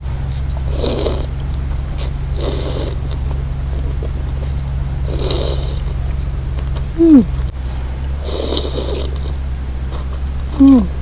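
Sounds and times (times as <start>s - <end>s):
low electrical hum: 0.0s - 11.0s
mouth eating noises: 0.7s - 6.1s, 8.2s - 11.0s.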